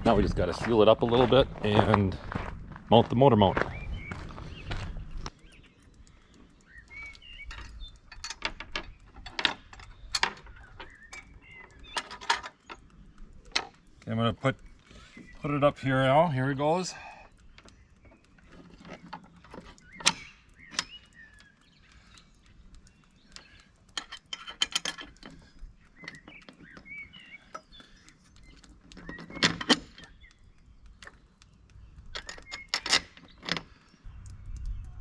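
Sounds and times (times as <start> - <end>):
metal clinking and knocking: 7.4 - 13.8, 23.9 - 27.0, 28.5 - 30.2, 32.1 - 33.7.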